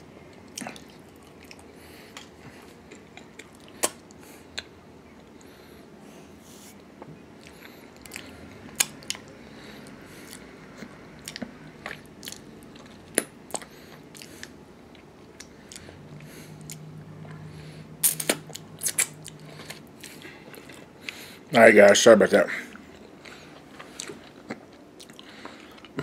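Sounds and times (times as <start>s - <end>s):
low steady hum: 0.0s - 26.0s
person chewing and biting: 7.4s - 16.0s, 18.0s - 21.2s, 22.8s - 26.0s.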